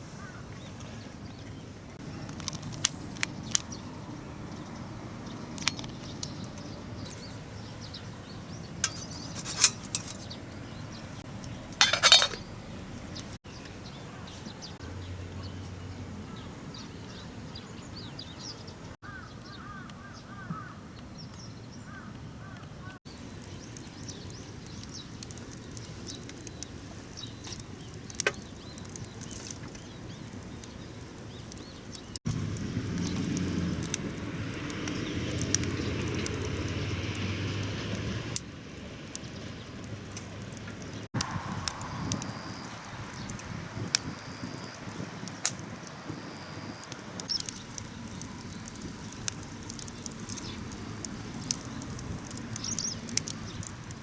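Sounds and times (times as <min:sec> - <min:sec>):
cookware and utensils clinking: 0:08.8 - 0:10.3, 0:11.8 - 0:12.5.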